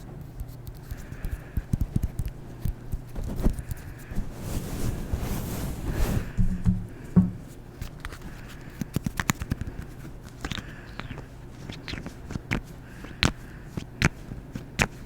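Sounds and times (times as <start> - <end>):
knock: 6.4 - 7.4
wet mouth clicks and lip smacks: 8.8 - 15.0.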